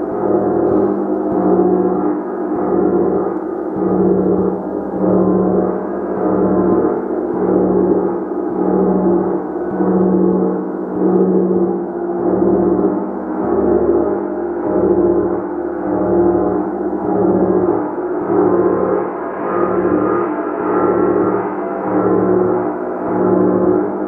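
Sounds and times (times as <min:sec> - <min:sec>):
gong ringing: 0:15.7 - 0:24.0.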